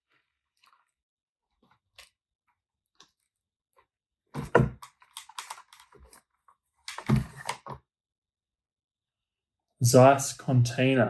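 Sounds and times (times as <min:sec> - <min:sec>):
hands handling a camera: 0:04.4 - 0:07.7.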